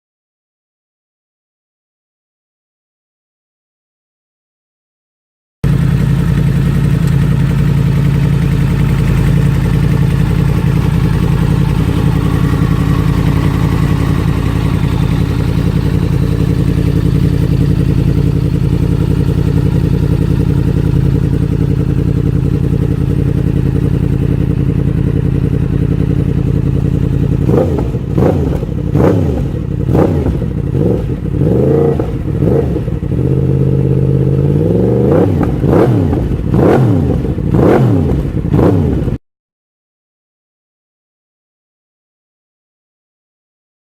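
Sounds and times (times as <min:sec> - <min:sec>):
motorcycle engine idling and revving: 0:05.6 - 0:39.2.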